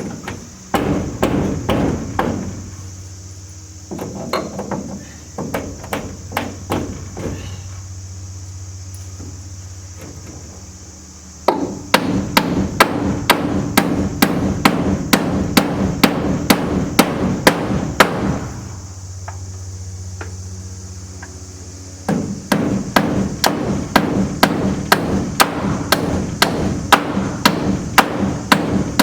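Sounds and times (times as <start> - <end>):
hammer driving nails into wood: 0.7 - 2.5, 11.5 - 18.4, 22.1 - 29.0.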